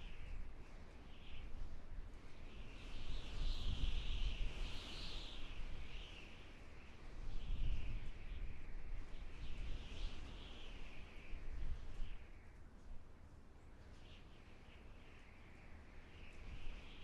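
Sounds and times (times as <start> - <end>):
wind on microphone: 1.4 - 6.2, 7.0 - 12.5.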